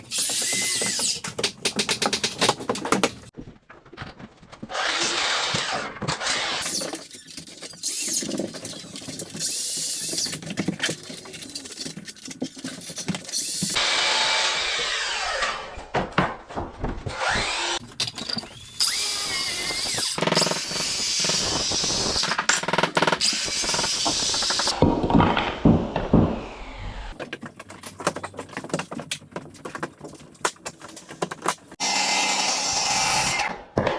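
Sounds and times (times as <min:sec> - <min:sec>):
power drill running: 0:18.4 - 0:22.2, 0:31.8 - 0:33.5.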